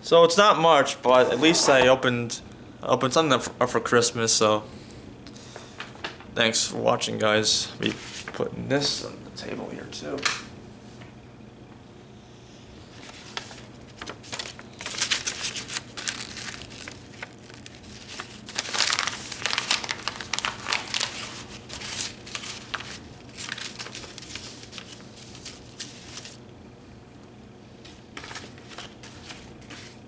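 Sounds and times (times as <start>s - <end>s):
packaging being crumpled: 13.0s - 26.4s.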